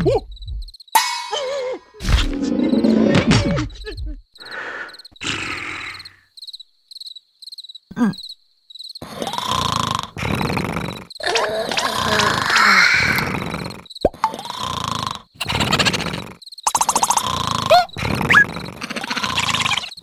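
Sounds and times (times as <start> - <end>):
high chirps: 0.4 - 2.0.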